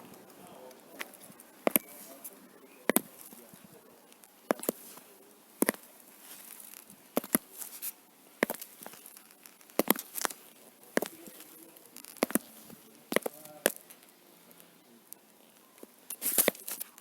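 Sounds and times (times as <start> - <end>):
heel clicks on hard ground: 1.0 - 1.9, 2.9 - 3.4, 4.2 - 5.0, 5.6 - 7.7, 8.4 - 14.0, 15.8 - 17.0.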